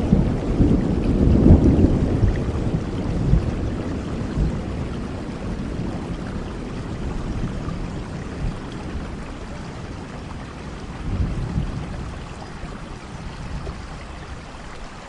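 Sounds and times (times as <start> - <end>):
low thunder rumble: 0.0 - 14.9
steady rain: 0.0 - 15.0.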